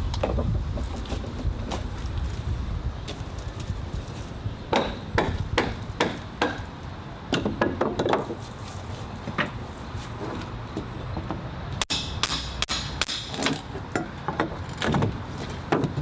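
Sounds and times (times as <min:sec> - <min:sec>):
sharp strikes on wood: 0:04.7 - 0:06.7.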